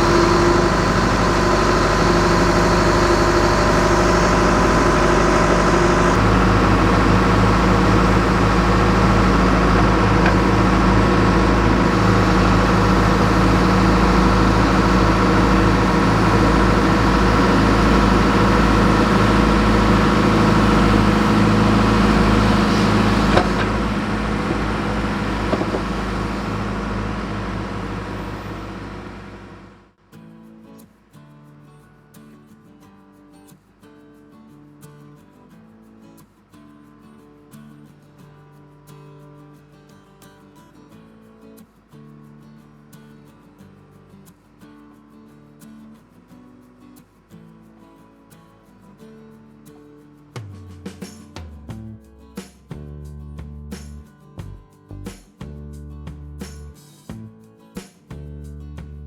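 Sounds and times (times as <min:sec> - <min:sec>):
heavy equipment engine running: 0:00.0 - 0:29.9.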